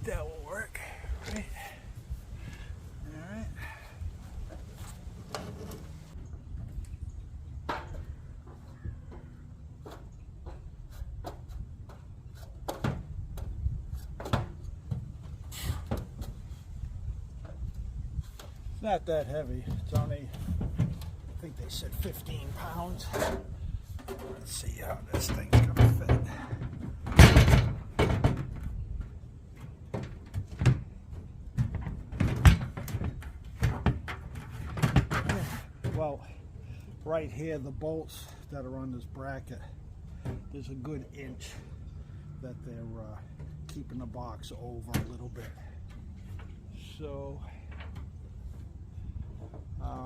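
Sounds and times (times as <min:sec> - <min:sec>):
aluminum box knocking and clunking: 0:07.6 - 0:16.4, 0:25.1 - 0:36.1.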